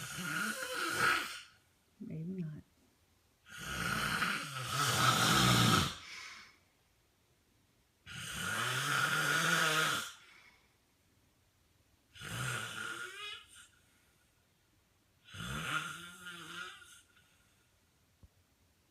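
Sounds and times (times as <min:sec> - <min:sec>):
man snoring: 0:00.0 - 0:01.5, 0:03.5 - 0:06.1, 0:08.1 - 0:10.2, 0:12.1 - 0:13.7, 0:15.2 - 0:17.2.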